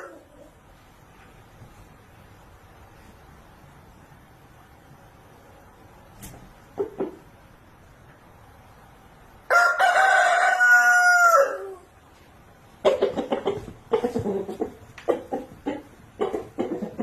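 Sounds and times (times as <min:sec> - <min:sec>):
rooster crowing: 0:00.0 - 0:00.5, 0:09.5 - 0:11.9.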